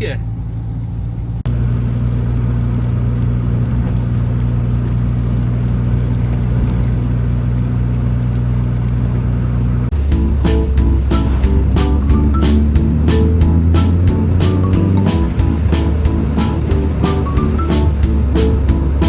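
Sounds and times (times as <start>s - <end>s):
car engine and road drone: 0.0s - 19.0s.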